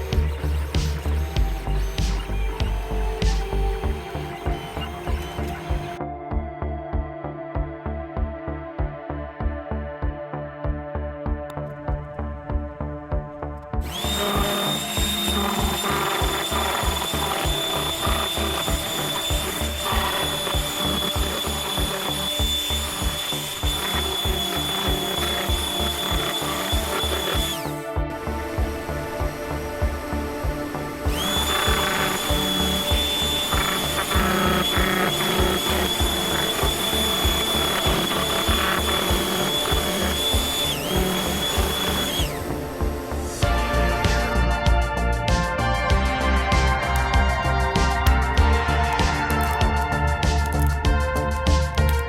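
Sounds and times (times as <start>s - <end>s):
power tool whining: 0.0s - 6.0s, 13.8s - 45.2s
music with driving beat and bass: 0.0s - 52.0s.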